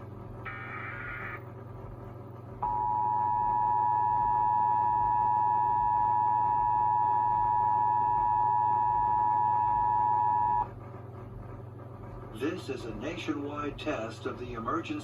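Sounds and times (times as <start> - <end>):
low hum: 0.0 - 11.5
two-tone alarm signal: 2.6 - 10.7.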